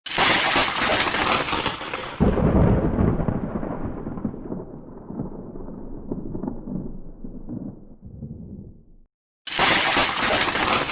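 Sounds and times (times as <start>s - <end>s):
heavy thunder boom: 2.2s - 9.1s
rolling thunder rumble: 2.2s - 9.1s
thunder crack and rumble: 2.2s - 9.1s.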